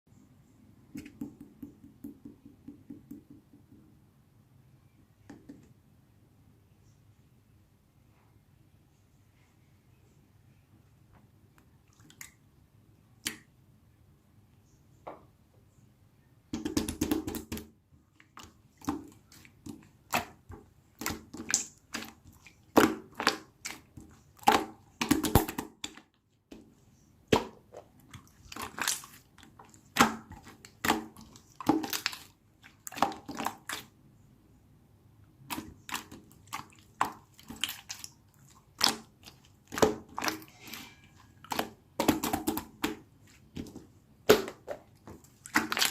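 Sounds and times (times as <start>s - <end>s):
squishing and crackling handling: 18.1s - 34.0s, 35.3s - 45.9s.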